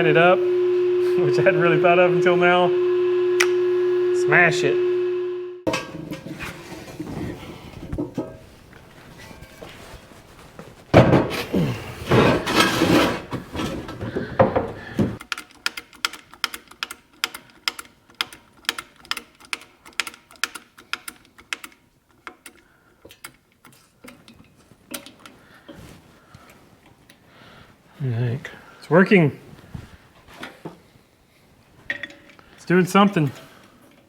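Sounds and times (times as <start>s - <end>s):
hand ratchet clicking: 15.2s - 24.2s.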